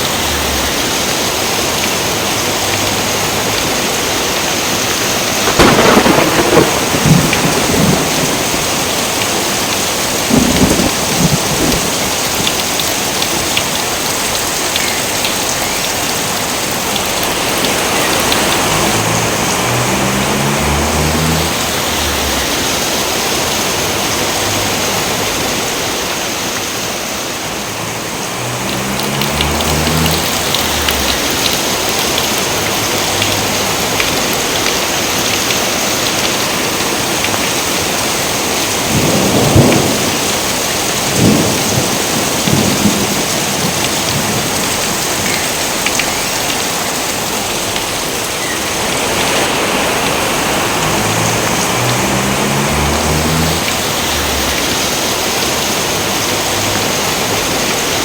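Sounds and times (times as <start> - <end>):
heavy rain: 0.0 - 58.0
thunder cracks: 5.4 - 12.4, 38.8 - 45.3.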